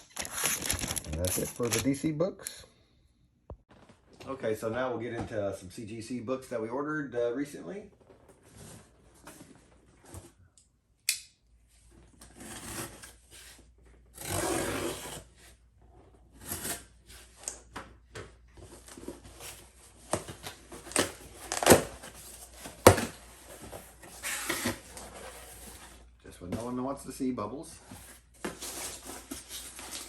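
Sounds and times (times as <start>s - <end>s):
packing material rustling: 0.0s - 2.0s
packing tape tearing: 0.0s - 2.0s, 20.4s - 23.2s, 24.1s - 25.3s.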